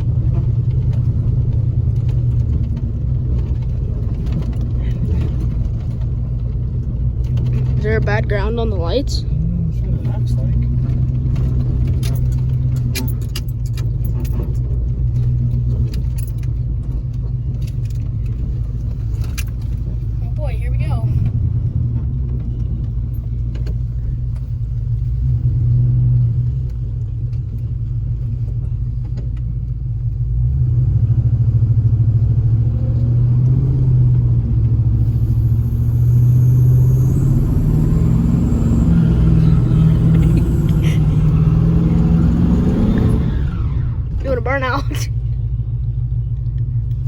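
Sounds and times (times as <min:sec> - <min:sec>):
truck engine revving: 0:07.1 - 0:13.4, 0:30.4 - 0:46.4.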